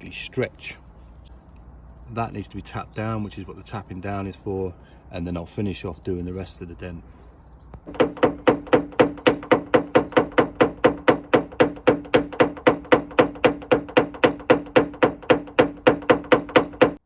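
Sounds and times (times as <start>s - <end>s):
metal tool tapping car panel: 7.8s - 17.0s.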